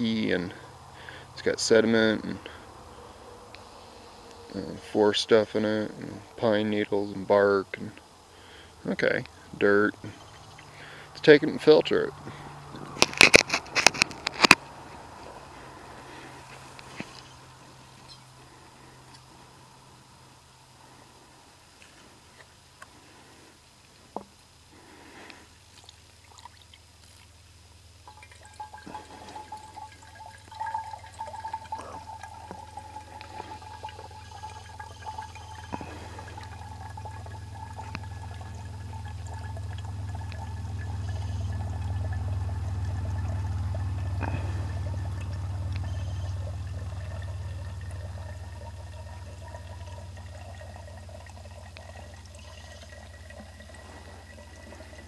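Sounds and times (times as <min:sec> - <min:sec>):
water trickling into a bottle: 0:00.0 - 0:55.0
rising ringing tone from bottle: 0:28.1 - 0:50.9, 0:51.8 - 0:55.0.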